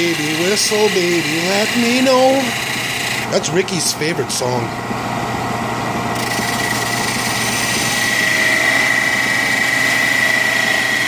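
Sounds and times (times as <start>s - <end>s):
wood lathe motor hum: 0.0s - 4.6s, 5.8s - 11.0s.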